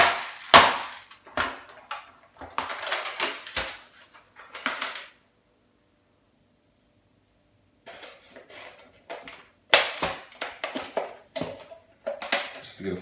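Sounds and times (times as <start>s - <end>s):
plastic parts knocking: 0.0s - 5.1s, 7.9s - 12.8s
parts clattering: 0.0s - 5.2s, 7.9s - 13.0s.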